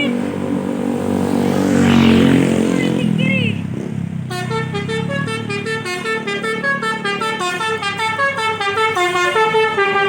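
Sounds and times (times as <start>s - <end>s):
bus horn playing a fast tune: 4.2s - 10.0s.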